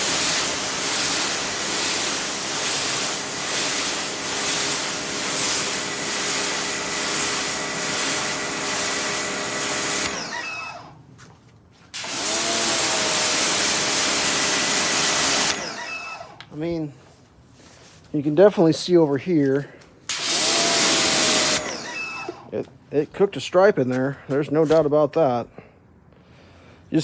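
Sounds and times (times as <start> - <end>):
pressure washer water spray hiss: 0.0 - 10.8, 12.0 - 16.3, 20.1 - 22.5
pump motor hum: 0.0 - 11.0, 11.9 - 16.4, 20.1 - 22.5.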